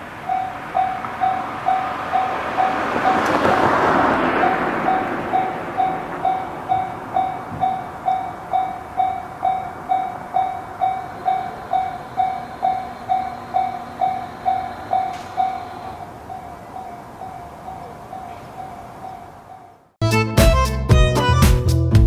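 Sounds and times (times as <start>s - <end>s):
level-crossing warning bell clanging: 0.0s - 20.0s
train passing: 0.0s - 20.0s.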